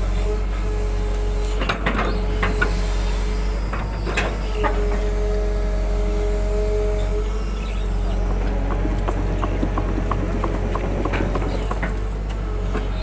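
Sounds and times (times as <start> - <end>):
excavator engine running: 7.0 - 13.0
knocks and scrapes: 8.3 - 12.0.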